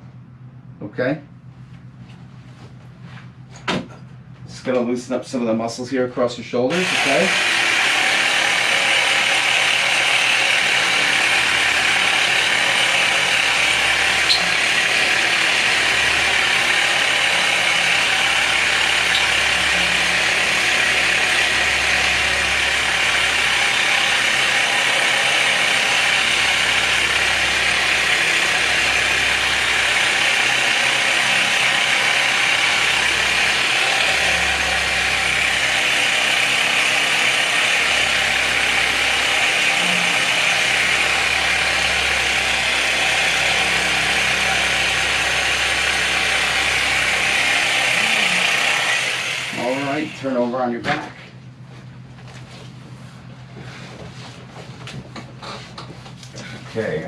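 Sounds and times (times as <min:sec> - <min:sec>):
electric massager running: 0:06.7 - 0:51.2.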